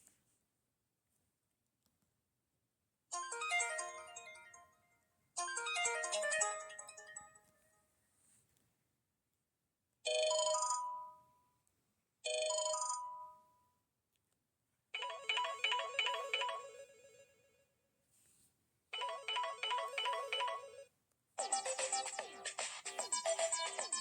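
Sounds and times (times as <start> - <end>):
fast electronic ringtone melody: 15.0 - 17.5, 19.0 - 24.0
phone chime: 19.0 - 20.9.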